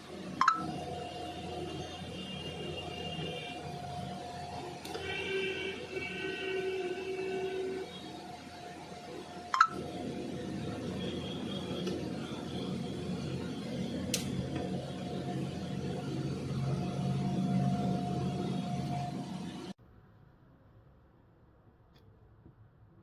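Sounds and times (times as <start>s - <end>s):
steady hum: 0.0s - 21.7s
faint beep-like tones: 0.4s - 3.9s, 5.0s - 14.0s.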